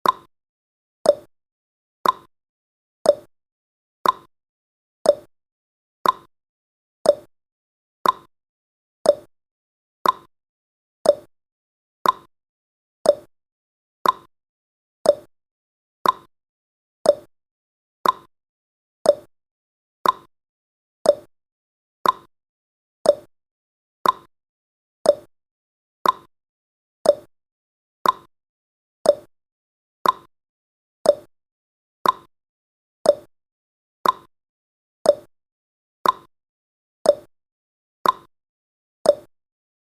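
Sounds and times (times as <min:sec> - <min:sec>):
timer ticking: 0:00.0 - 0:00.3, 0:01.1 - 0:01.3, 0:02.0 - 0:02.3, 0:03.1 - 0:03.3, 0:04.0 - 0:04.3, 0:05.1 - 0:05.3, 0:06.0 - 0:06.3, 0:07.1 - 0:07.3, 0:08.0 - 0:08.3, 0:09.0 - 0:09.3, 0:10.0 - 0:10.3, 0:11.0 - 0:11.3, 0:12.0 - 0:12.3, 0:13.0 - 0:13.3, 0:14.0 - 0:14.3, 0:15.0 - 0:15.3, 0:16.0 - 0:16.3, 0:17.0 - 0:17.3, 0:18.0 - 0:18.3, 0:19.0 - 0:19.3, 0:20.0 - 0:20.3, 0:21.0 - 0:21.3, 0:22.0 - 0:22.3, 0:23.0 - 0:23.3, 0:24.0 - 0:24.3, 0:25.0 - 0:25.3, 0:26.0 - 0:26.3, 0:27.0 - 0:27.3, 0:28.0 - 0:28.3, 0:29.0 - 0:29.3, 0:30.0 - 0:30.3, 0:31.0 - 0:31.3, 0:32.0 - 0:32.3, 0:33.0 - 0:33.3, 0:34.0 - 0:34.3, 0:35.1 - 0:35.3, 0:36.0 - 0:36.3, 0:37.1 - 0:37.3, 0:38.0 - 0:38.3, 0:39.1 - 0:39.3.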